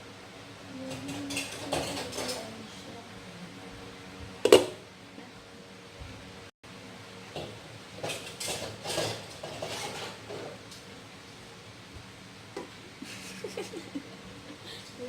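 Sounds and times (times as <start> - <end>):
food rustling in a pot: 8.4 - 10.7.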